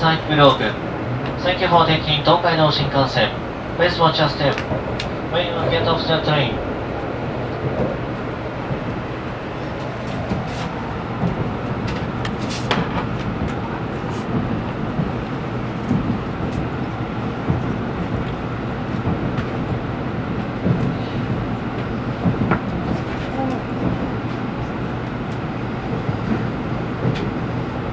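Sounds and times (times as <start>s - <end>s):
train running noise with low hum: 0.0s - 27.9s.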